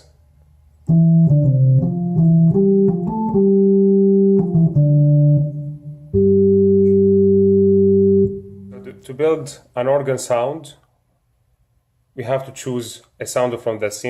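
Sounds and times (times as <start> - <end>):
organ playing notes and chords: 0.8 - 9.0.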